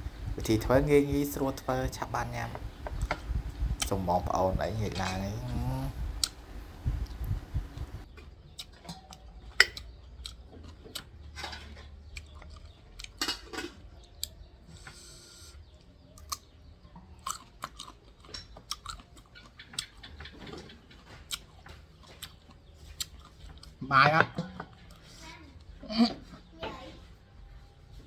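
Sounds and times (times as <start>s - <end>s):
person chewing food: 5.1s - 15.0s, 15.7s - 23.8s, 24.7s - 25.8s.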